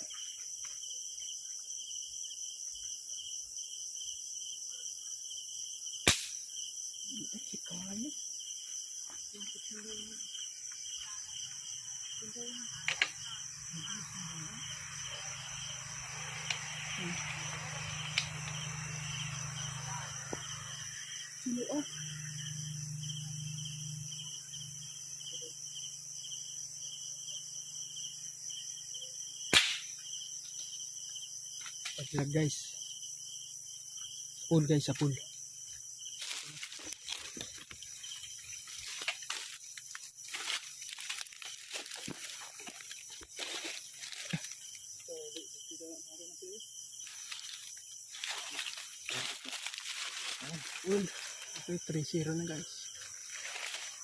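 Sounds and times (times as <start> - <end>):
crickets chirring: 0.0 - 54.0
air rifle shot: 29.5 - 29.9.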